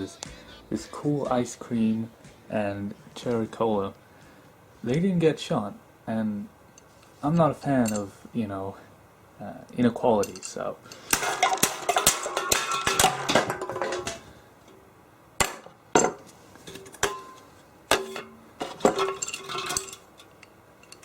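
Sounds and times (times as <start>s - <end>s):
faint music: 0.0s - 15.1s
clicks and metallic clinks: 10.2s - 14.2s, 19.0s - 21.0s.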